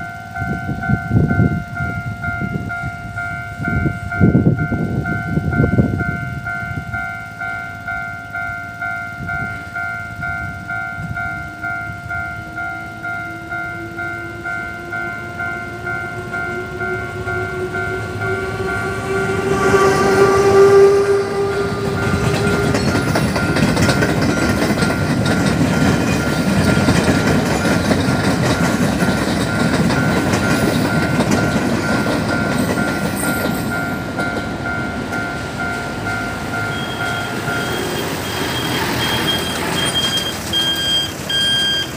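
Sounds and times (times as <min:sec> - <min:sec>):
level-crossing warning bell: 0:00.0 - 0:41.9
train passing with rail clatter: 0:00.0 - 0:41.9
train horn: 0:10.5 - 0:24.0
electronic beeping: 0:35.3 - 0:41.9.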